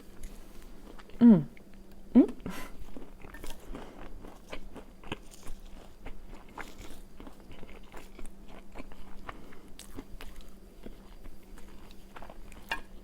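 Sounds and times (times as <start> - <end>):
chewing food: 2.7 - 13.0.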